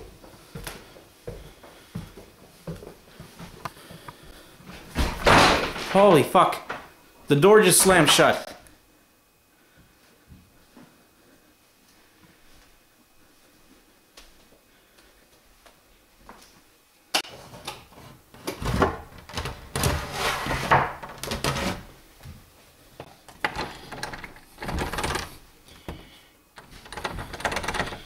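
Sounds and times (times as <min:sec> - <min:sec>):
locked door rattling: 0:23.4 - 0:25.4, 0:26.6 - 0:28.0.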